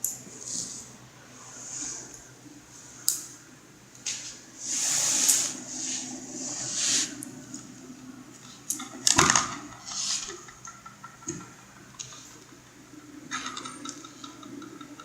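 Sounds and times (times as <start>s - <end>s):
short hissy rustles: 4.1s - 7.3s
objects knocking and clattering: 8.8s - 12.3s.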